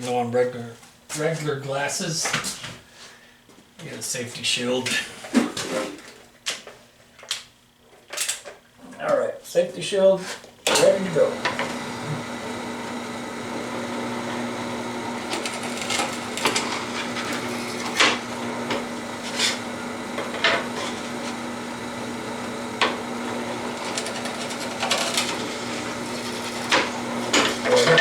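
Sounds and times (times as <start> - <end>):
drill press motor humming: 10.7 - 28.0
drill bit knocking and scraping wood: 10.8 - 28.0.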